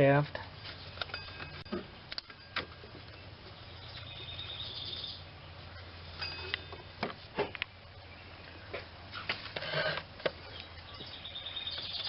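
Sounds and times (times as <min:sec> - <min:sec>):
steady low hum: 0:00.0 - 0:11.8
high pulsing chirp: 0:00.8 - 0:06.9, 0:10.5 - 0:12.0.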